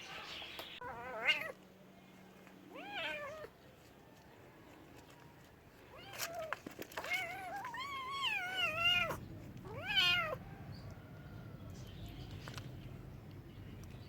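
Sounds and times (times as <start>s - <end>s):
cat meowing: 0.8s - 1.6s, 2.7s - 3.5s, 5.9s - 10.4s.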